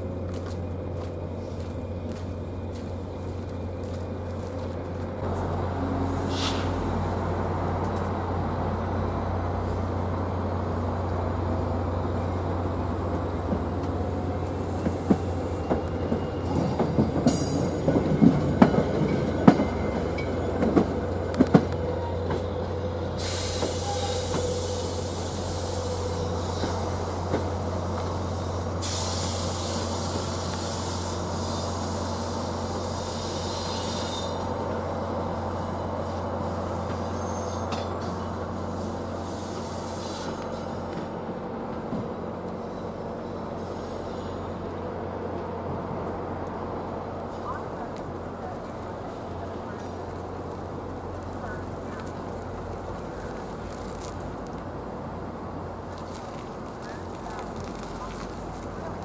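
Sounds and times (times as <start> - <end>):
train low drone: 0.0 - 59.0
high hissing or screeching: 23.2 - 27.1.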